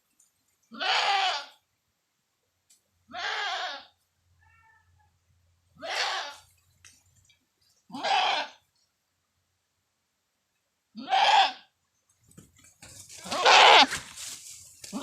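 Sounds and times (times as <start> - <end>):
goat bleating: 0.7 - 1.6, 3.1 - 4.9, 5.8 - 6.5, 7.9 - 8.6, 11.0 - 11.7, 13.2 - 14.0.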